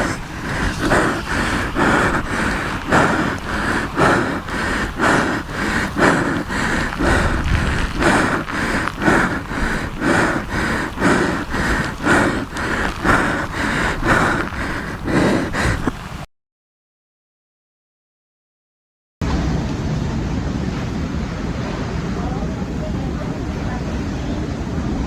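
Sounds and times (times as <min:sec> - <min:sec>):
rhythmic whooshing strokes: 0:00.0 - 0:16.2
steady rumble: 0:00.0 - 0:16.3
storm wind and rain: 0:00.0 - 0:16.3, 0:19.2 - 0:25.0.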